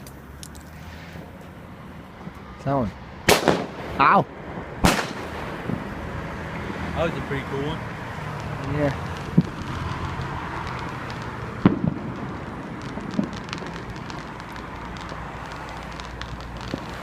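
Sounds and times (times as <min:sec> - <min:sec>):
faint firework crackling: 0:00.0 - 0:17.0
outdoor background noise: 0:00.0 - 0:17.0
firework bangs and pops: 0:03.3 - 0:05.9, 0:07.2 - 0:17.0.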